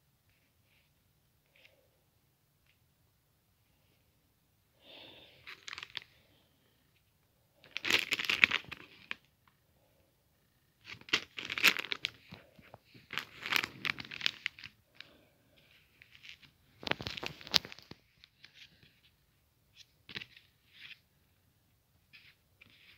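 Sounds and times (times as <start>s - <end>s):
packaging crinkling and tearing: 7.7s - 9.2s, 10.8s - 12.4s, 13.0s - 14.8s, 16.0s - 18.0s.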